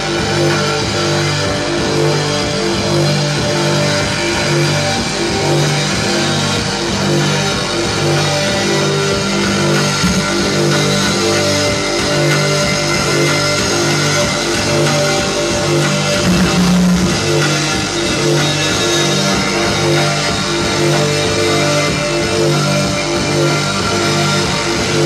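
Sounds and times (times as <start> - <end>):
live rock band playing: 6.7 - 23.2.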